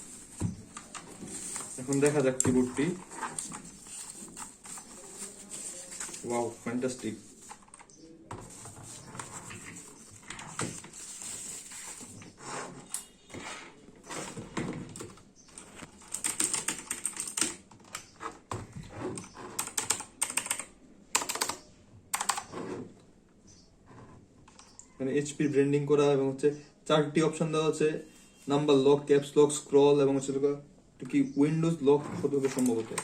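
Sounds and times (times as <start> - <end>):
keyboard keys clicking: 19.6 - 21.6.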